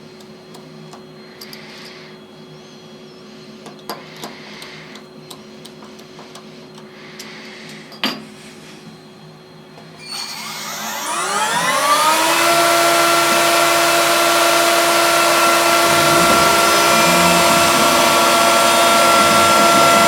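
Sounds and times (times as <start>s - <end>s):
milling machine humming: 10.0s - 20.0s
spindle spinning up whine: 10.0s - 20.0s.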